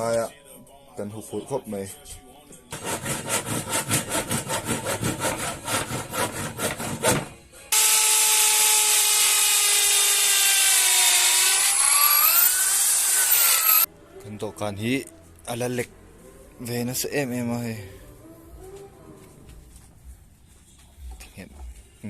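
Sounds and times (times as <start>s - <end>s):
handsaw cutting wooden board: 2.8s - 13.9s
power tool high whine: 7.7s - 13.9s.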